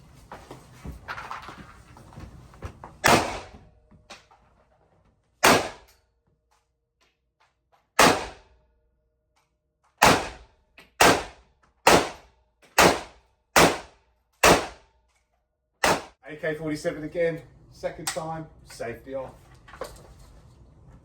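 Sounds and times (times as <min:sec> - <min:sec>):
rifle firing single shots: 0:03.0 - 0:03.5, 0:05.4 - 0:05.9, 0:08.0 - 0:08.4, 0:10.0 - 0:10.4, 0:11.0 - 0:12.2, 0:12.8 - 0:14.8, 0:15.8 - 0:16.1.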